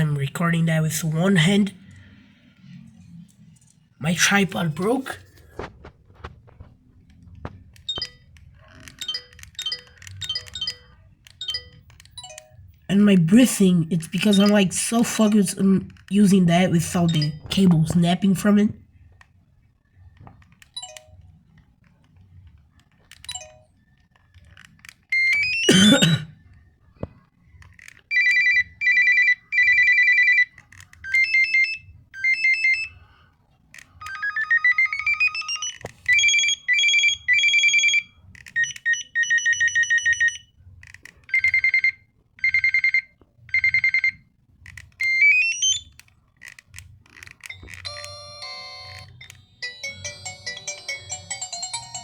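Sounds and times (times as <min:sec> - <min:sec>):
phone alert tones: 0:07.9 - 0:15.6, 0:16.2 - 0:18.7, 0:28.1 - 0:33.0, 0:34.0 - 0:40.5, 0:41.3 - 0:44.2, 0:45.0 - 0:45.9, 0:47.5 - 0:52.0.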